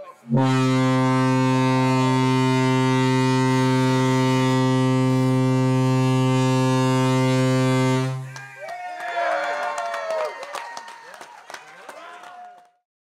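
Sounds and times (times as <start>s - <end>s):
deep ship's horn blast: 0.3s - 8.4s.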